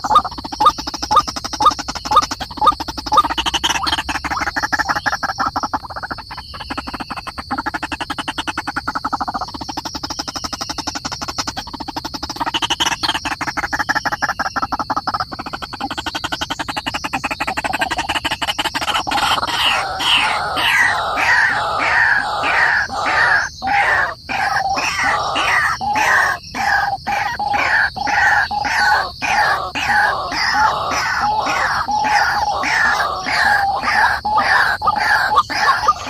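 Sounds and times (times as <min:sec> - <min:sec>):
birds calling: 0:00.0 - 0:36.0.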